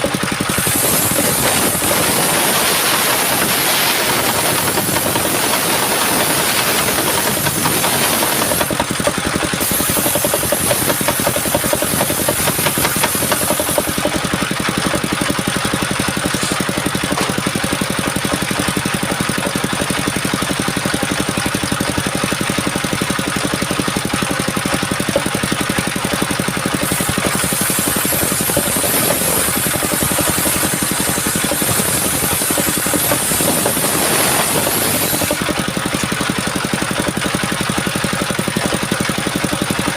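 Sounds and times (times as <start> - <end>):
engine droning: 0.0 - 20.3.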